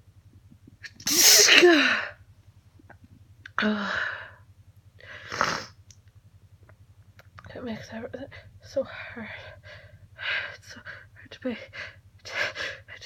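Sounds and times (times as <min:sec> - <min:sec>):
woman sneezing: 0:00.9 - 0:02.0.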